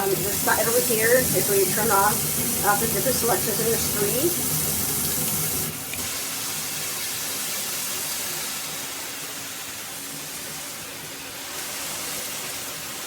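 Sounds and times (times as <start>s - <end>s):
shower head spraying water: 0.0s - 8.4s.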